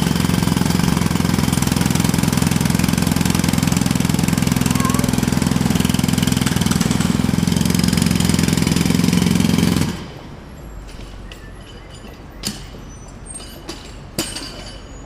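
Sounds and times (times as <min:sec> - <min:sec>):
jackhammer rattling: 0:00.0 - 0:10.1.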